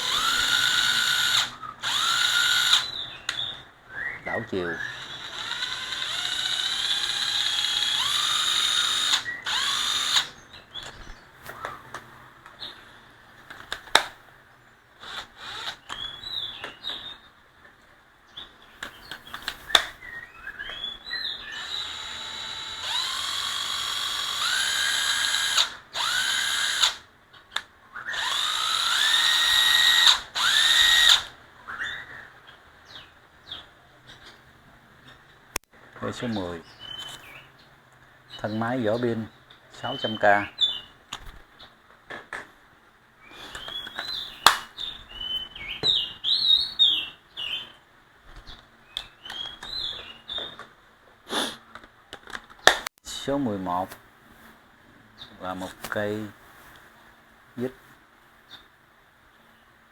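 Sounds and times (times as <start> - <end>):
drill trigger clicks: 0.0 - 3.5, 4.8 - 12.0, 15.0 - 16.8, 21.5 - 31.3
cordless drill motor whine: 0.0 - 4.1, 4.7 - 11.8, 15.0 - 16.6, 21.0 - 27.1, 28.0 - 31.3.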